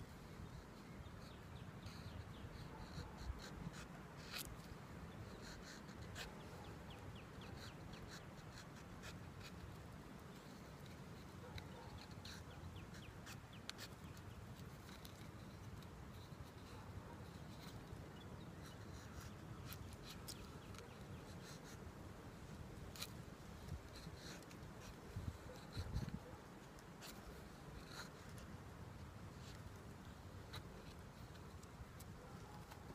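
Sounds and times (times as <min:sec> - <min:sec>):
knife scraping wood: 0:02.7 - 0:04.8.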